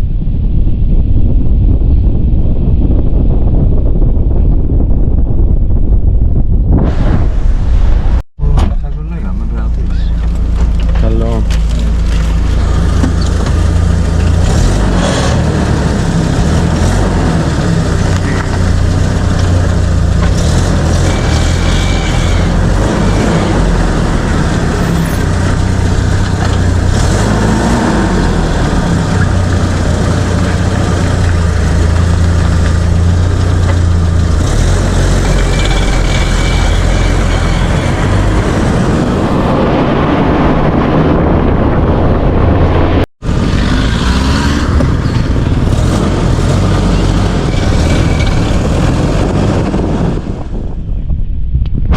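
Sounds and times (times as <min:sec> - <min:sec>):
car engine rumble: 0:00.0 - 0:51.9
road noise: 0:01.6 - 0:51.8
short high-pitched squeak: 0:21.1 - 0:22.6.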